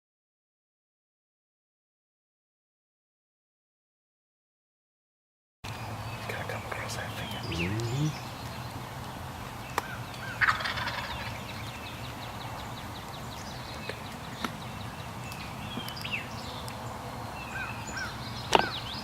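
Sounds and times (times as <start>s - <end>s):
songbirds chirping: 5.7s - 10.4s, 11.0s - 19.0s.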